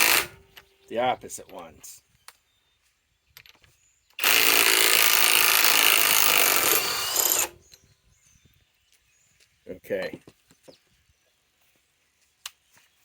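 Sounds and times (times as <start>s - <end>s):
impact wrench hammering: 0.0s - 0.4s, 4.2s - 7.6s.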